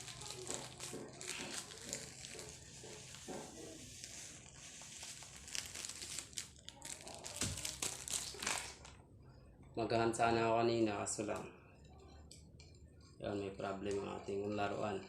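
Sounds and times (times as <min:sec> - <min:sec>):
crinkling and rustling: 0:00.0 - 0:09.0.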